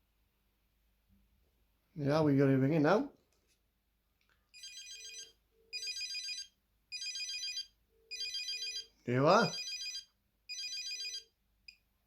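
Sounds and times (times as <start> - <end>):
trilling electronic phone ringtone: 4.6 - 11.4.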